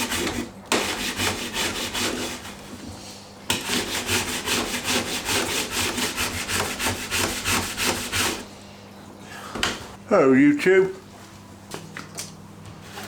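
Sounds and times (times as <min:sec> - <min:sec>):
handsaw cutting timber: 0:00.0 - 0:02.6, 0:03.5 - 0:08.5.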